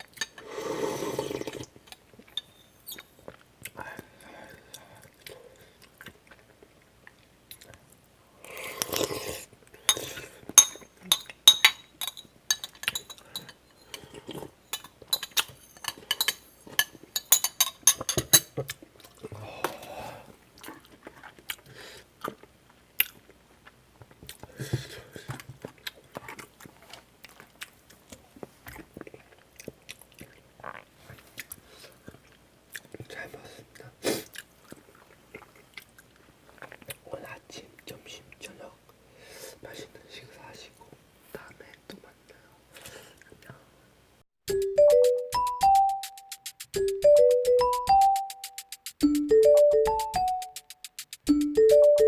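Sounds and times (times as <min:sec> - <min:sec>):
chewing: 0:04.5 - 0:10.5, 0:18.6 - 0:19.3, 0:20.5 - 0:37.0
cutlery clinking on a dish: 0:09.9 - 0:14.0, 0:14.7 - 0:18.6.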